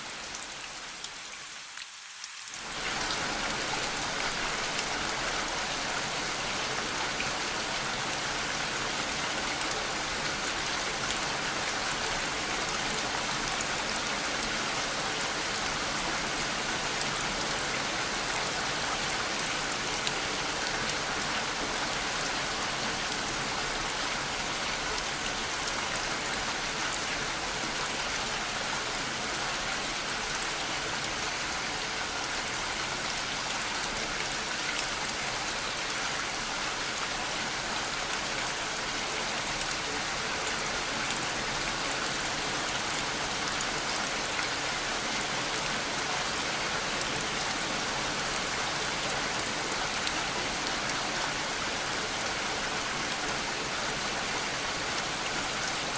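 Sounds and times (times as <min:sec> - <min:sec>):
steady rain hiss: 0:00.0 - 0:55.9.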